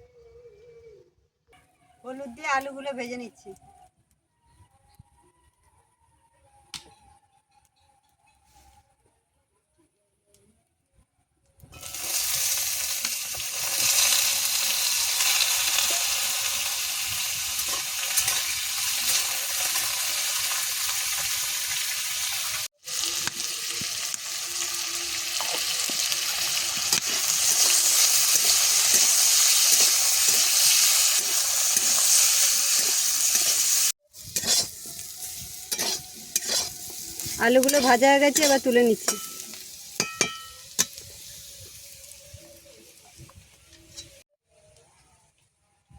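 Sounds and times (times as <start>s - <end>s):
potatoes sizzling in oil: 11.7s - 44.2s
spatula scraping a pan: 24.6s - 42.0s.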